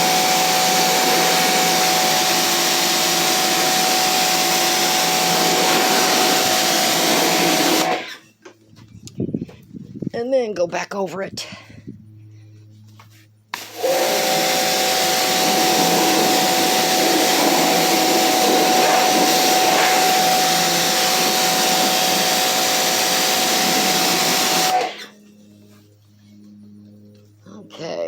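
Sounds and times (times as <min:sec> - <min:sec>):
pressure washer spraying: 0:00.0 - 0:08.2, 0:13.6 - 0:25.1.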